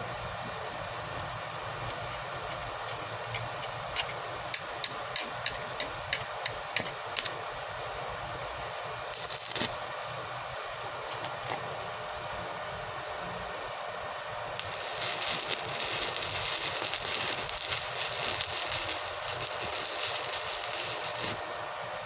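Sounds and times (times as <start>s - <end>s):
arc welding crackling hiss: 9.2s - 10.2s, 14.6s - 22.0s.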